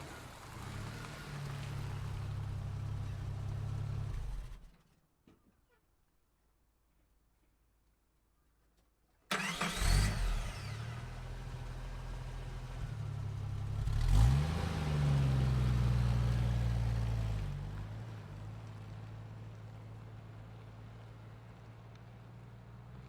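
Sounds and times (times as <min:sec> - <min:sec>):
car engine starting and revving: 0:00.0 - 0:04.7, 0:09.3 - 0:17.8.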